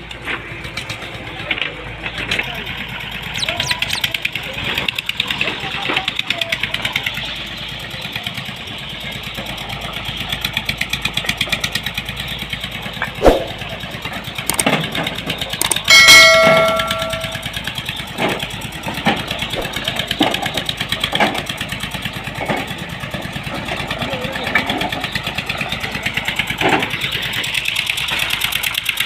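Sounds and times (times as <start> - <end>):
heavy machine engine running: 0.0 - 29.0
loud metallic clang: 15.8 - 17.6.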